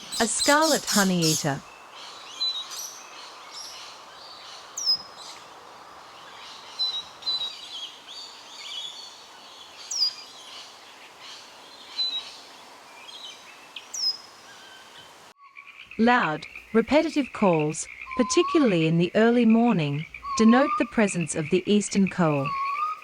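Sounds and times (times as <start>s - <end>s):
bird twittering chirps: 0.0s - 12.4s, 13.0s - 23.0s
outdoor hiss: 0.0s - 15.4s
bird high downward-sweeping calls: 20.1s - 21.2s, 22.3s - 23.0s.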